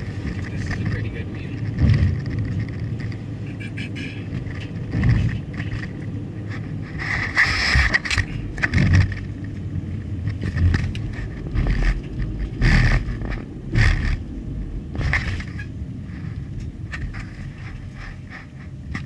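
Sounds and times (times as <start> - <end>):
scraping noises: 0.0 - 9.5, 15.0 - 19.0
car road and engine rumble: 0.0 - 19.0.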